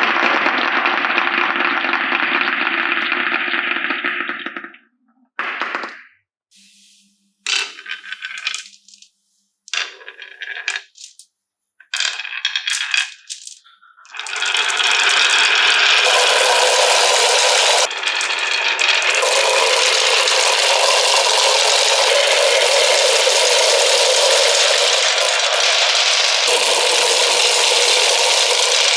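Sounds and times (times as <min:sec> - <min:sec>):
marbles rattling down wooden track: 0:07.5 - 0:09.1, 0:09.7 - 0:11.3, 0:11.9 - 0:28.9.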